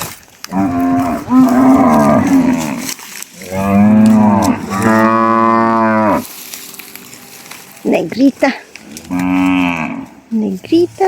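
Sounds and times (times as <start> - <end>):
cow mooing: 0.5 - 6.3, 8.9 - 10.2.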